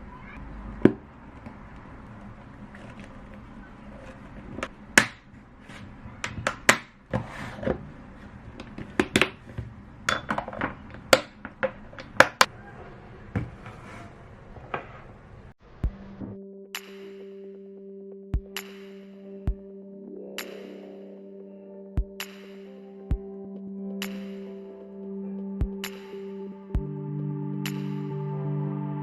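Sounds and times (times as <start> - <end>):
steady background noise: 0.0 - 16.4
kitchenware clinking and knocking: 10.1 - 12.5.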